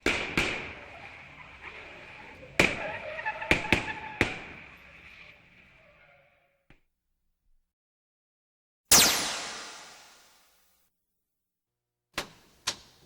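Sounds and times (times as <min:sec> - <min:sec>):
gunshots echoing: 0:00.0 - 0:02.8, 0:08.9 - 0:10.2.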